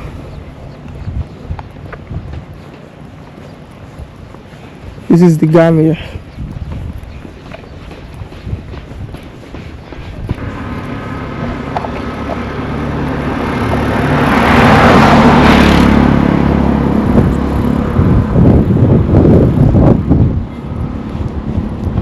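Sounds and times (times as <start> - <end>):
wind buffeting microphone: 0.0 - 22.0
vehicle driving past: 10.4 - 22.0.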